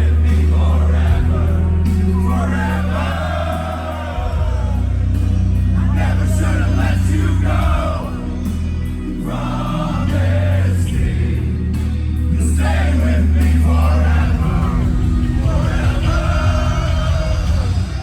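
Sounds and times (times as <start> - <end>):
metalcore band playing loud: 0.0 - 18.0.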